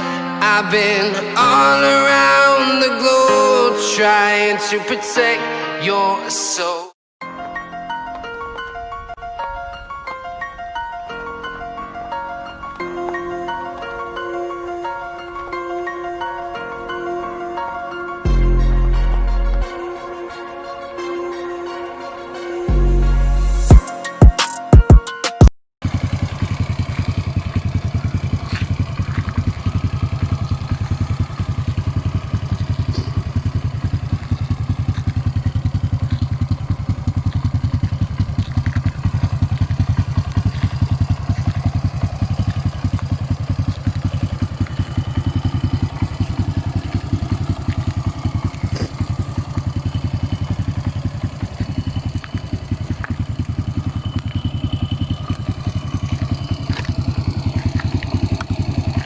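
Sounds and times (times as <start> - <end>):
small motorcycle engine idling: 25.8 - 59.0.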